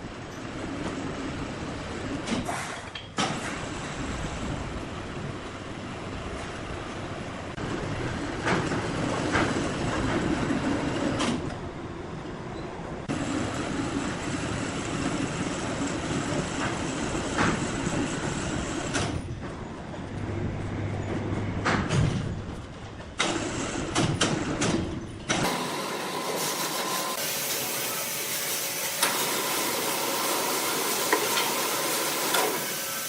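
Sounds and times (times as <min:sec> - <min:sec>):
sawmill machinery running: 0:13.1 - 0:33.0
sharp knocks and clanks: 0:21.1 - 0:25.5.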